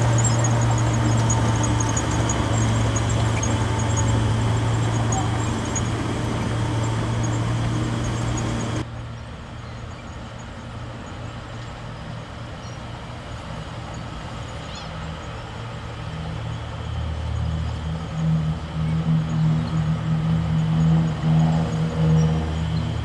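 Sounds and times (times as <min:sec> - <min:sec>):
bulldozer diesel engine running: 0:00.0 - 0:08.9.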